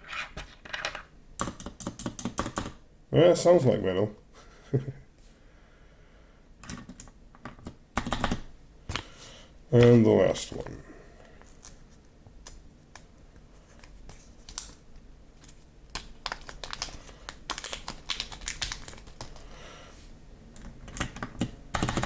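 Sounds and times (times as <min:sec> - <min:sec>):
mechanical keyboard clicks: 0:20.6 - 0:22.0.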